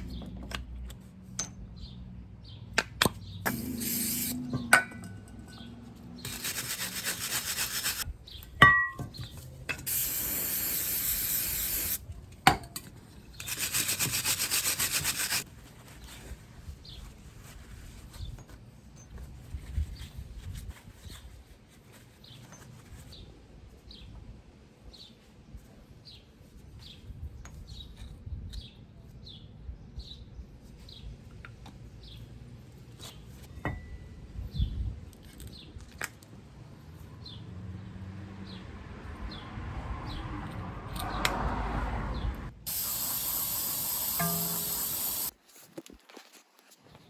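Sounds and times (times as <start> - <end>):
loud steady hiss: 9.9 - 12.0, 42.6 - 45.3.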